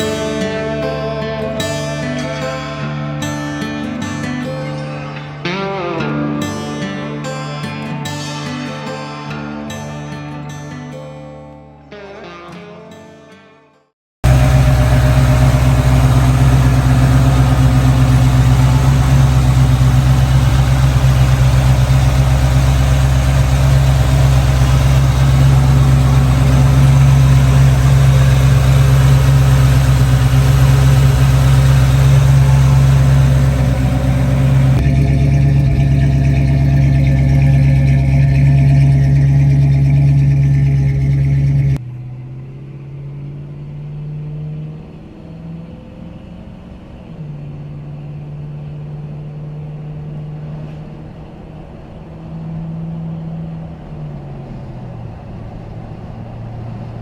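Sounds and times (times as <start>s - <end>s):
truck engine idling loudly: 14.2s - 41.8s.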